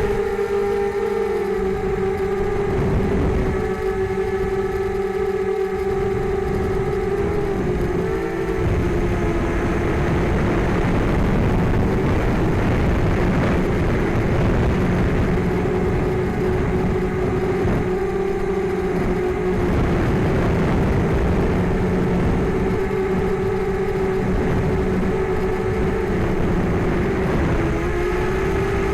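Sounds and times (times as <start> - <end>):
drone motors whining: 0.0 - 28.9
low rumble: 0.0 - 28.9.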